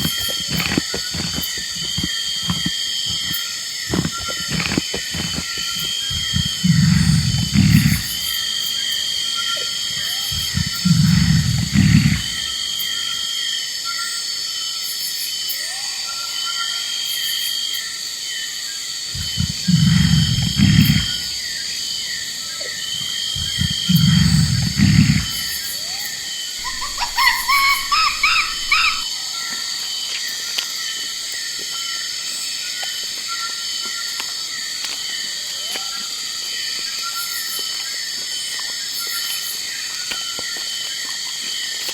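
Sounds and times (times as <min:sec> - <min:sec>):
large animal deep calls: 0:00.0 - 0:12.6, 0:19.1 - 0:29.1
short high rising calls: 0:26.6 - 0:29.1.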